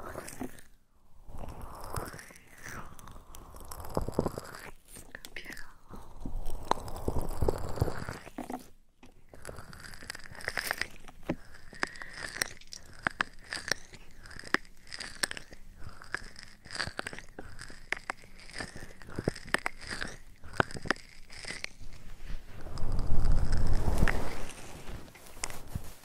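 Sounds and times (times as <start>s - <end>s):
sharp clicks and crackles: 1.4s - 26.0s
soft rubbing: 21.1s - 26.0s.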